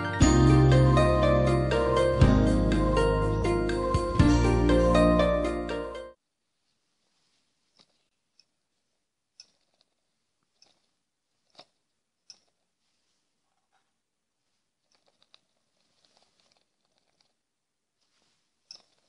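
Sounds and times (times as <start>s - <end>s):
small ticks: 9.4s - 12.6s.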